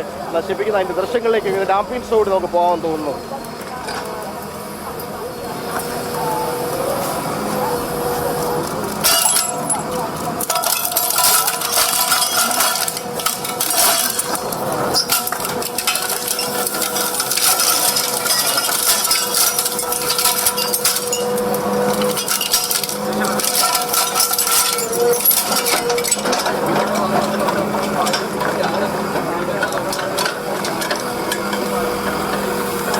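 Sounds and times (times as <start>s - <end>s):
plastic crunching and cracking: 8.4s - 28.8s
metallic clinking: 10.5s - 27.4s.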